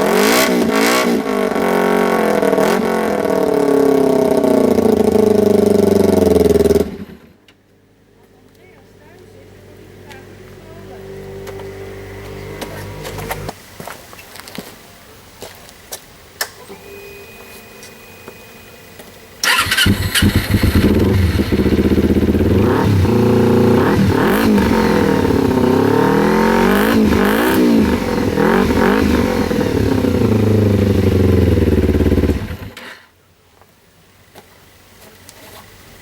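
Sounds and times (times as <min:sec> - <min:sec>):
motorcycle engine revving: 0:00.0 - 0:07.4, 0:09.9 - 0:13.5, 0:19.4 - 0:32.8.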